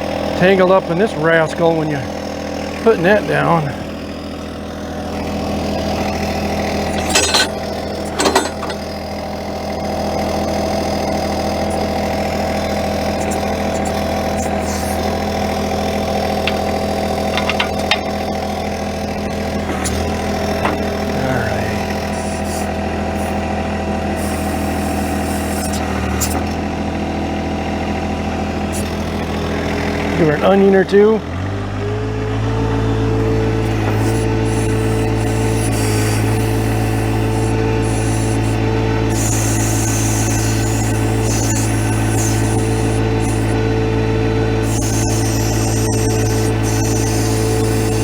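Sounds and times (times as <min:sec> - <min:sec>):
tractor diesel engine running: 0:00.0 - 0:48.0
sharp metallic clanks: 0:06.9 - 0:09.0, 0:16.4 - 0:18.1.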